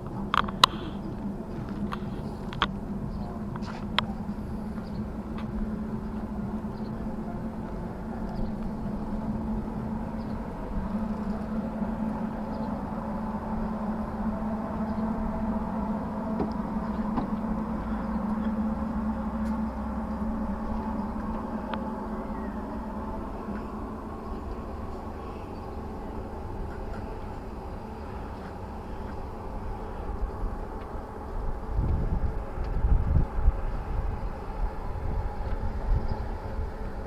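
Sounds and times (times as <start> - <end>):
faint clicks: 0.0 - 5.6
low mechanical hum: 0.0 - 37.0
low rumble: 0.0 - 37.0.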